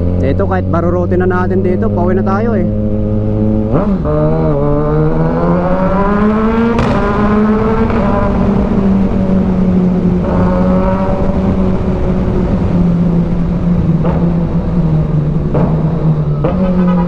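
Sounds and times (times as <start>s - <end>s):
motorcycle engine accelerating: 0.0s - 17.0s.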